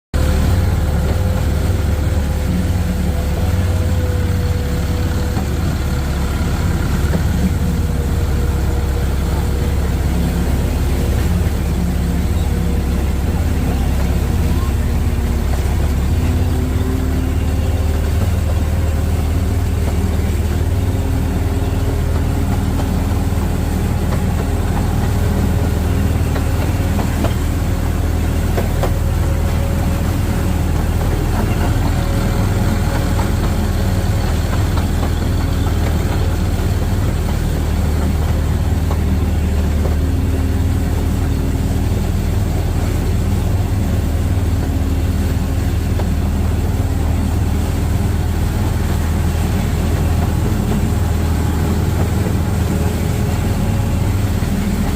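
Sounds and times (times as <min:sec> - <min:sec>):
low engine drone: 0:00.1 - 0:54.9.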